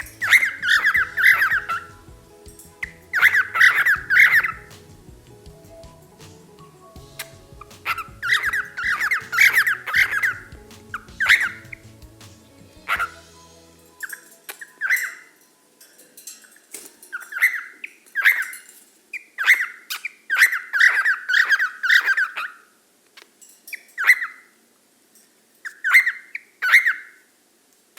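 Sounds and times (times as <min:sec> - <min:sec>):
cockatiel squawking: 0:00.0 - 0:01.9, 0:02.8 - 0:04.8, 0:07.1 - 0:10.6, 0:11.2 - 0:11.8, 0:19.4 - 0:22.6, 0:25.7 - 0:27.2.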